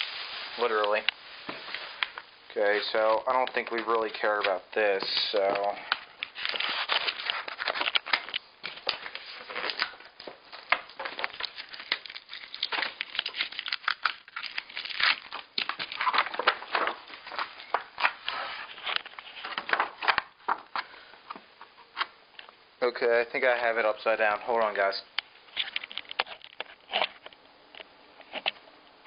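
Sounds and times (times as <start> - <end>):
plastic packaging crinkling: 0.0 - 21.0, 25.4 - 27.3.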